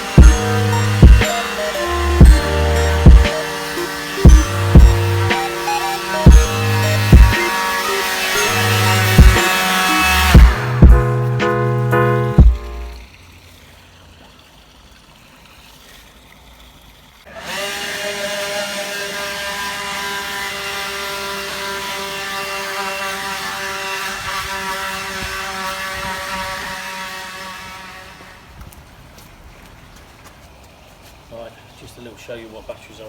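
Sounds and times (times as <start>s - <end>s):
garden tool motor whining: 0.0s - 10.9s, 17.3s - 28.5s.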